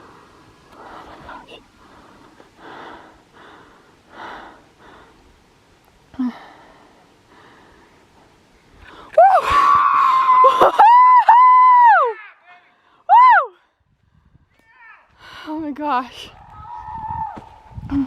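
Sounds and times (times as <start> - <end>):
breathing: 0.0 - 5.3, 6.1 - 9.2, 12.7 - 14.5, 15.2 - 15.6
hushed whispering: 0.9 - 1.7
woman squealing excitedly: 9.2 - 12.2, 13.1 - 13.6.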